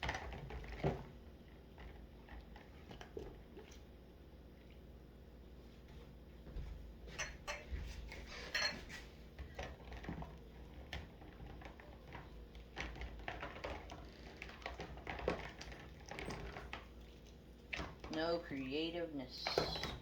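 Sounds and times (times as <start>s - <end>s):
dishes and cups clinking: 7.1s - 9.0s.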